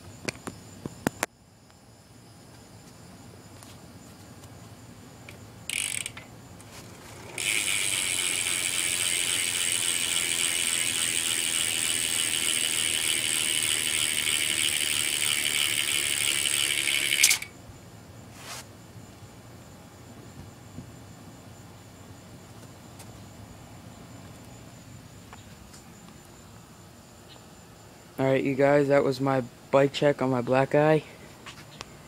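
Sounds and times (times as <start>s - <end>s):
bike hub pawls ratcheting buzz: 5.3s - 17.6s.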